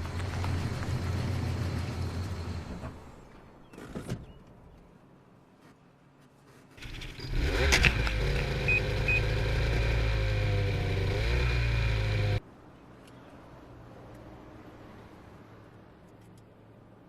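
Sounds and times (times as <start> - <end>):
engine starting and running: 6.8 - 12.4.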